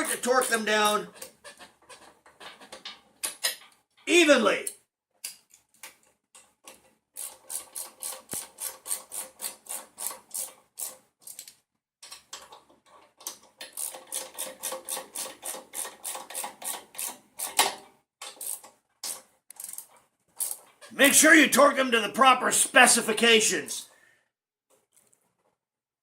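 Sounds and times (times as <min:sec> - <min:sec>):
ratchet wrench clicking: 0:07.2 - 0:11.5, 0:13.6 - 0:17.6, 0:18.3 - 0:20.7.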